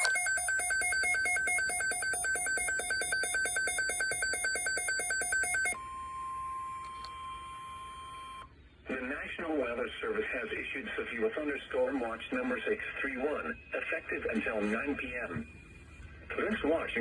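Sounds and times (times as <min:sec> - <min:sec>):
rapid electronic alarm beeping: 0:00.0 - 0:05.8.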